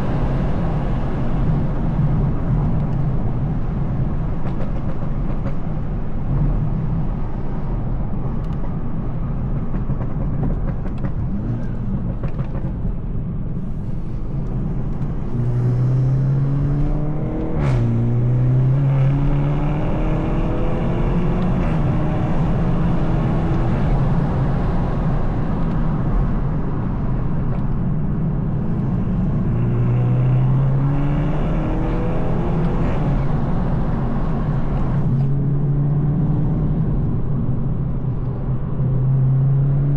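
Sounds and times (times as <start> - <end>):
car engine accelerating: 9.5 - 39.9.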